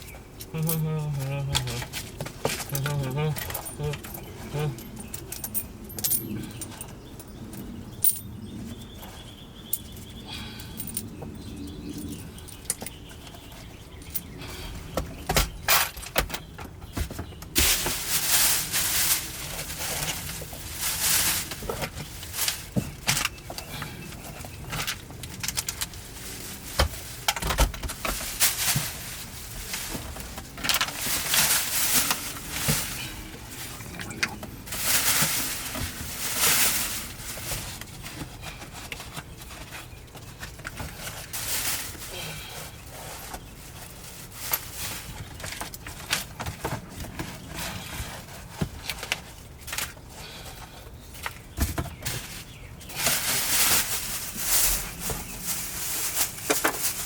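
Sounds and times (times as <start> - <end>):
debris clicking and rattling: 24.3 - 37.8.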